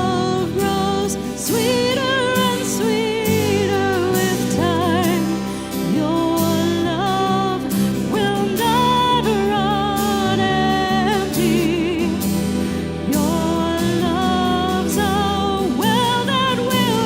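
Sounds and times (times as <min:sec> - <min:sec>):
steady bass line: 0:00.0 - 0:17.0.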